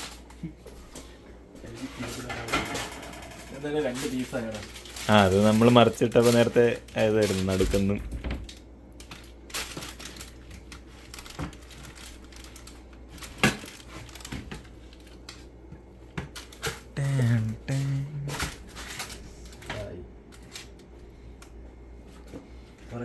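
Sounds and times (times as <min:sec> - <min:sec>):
brief voice: 0:17.0 - 0:18.3.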